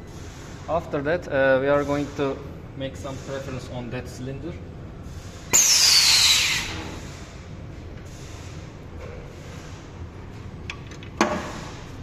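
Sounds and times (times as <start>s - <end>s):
compressed air hiss: 5.1s - 7.3s.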